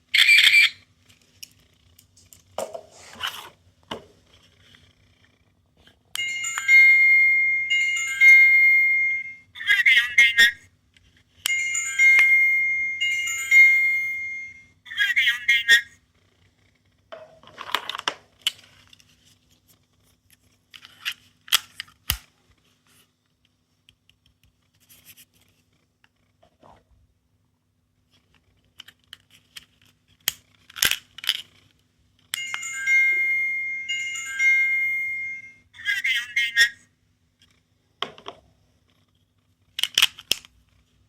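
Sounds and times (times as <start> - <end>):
electronic toy beeping tune: 6.2 - 10.3, 11.5 - 15.5, 32.4 - 36.2
plastic toys clicking and rustling: 17.4 - 19.2, 20.3 - 22.2, 28.1 - 32.6, 39.7 - 40.7.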